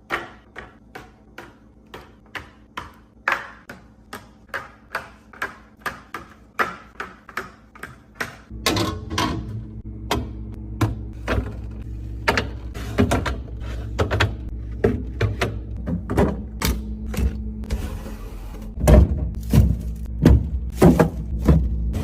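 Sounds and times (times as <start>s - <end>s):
items set down in fridge: 18.7s - 22.0s.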